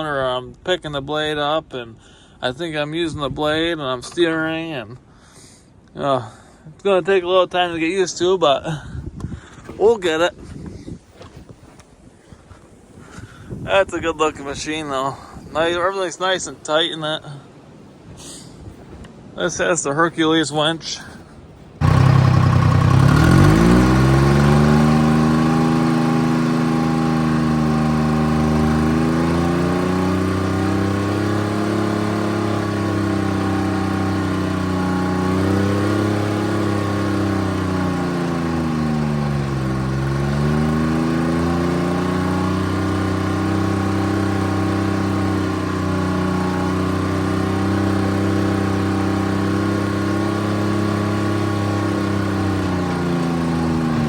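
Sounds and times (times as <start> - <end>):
diesel engine running: 21.8 - 54.0.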